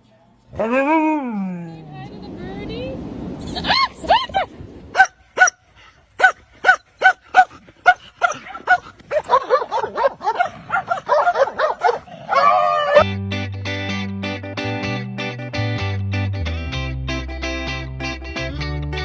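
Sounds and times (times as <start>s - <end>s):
dog barking: 5.0s - 5.6s, 6.2s - 13.0s.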